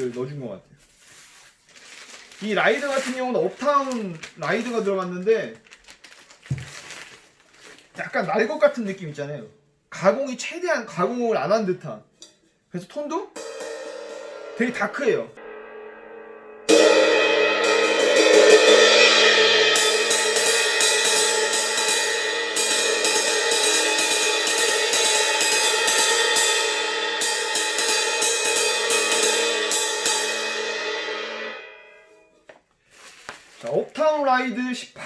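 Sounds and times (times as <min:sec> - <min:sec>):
ride cymbal ringing: 0:13.4 - 0:32.3.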